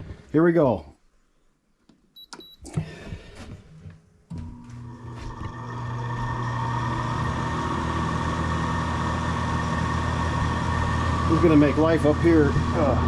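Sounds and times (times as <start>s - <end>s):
air conditioner humming: 8.8s - 13.0s.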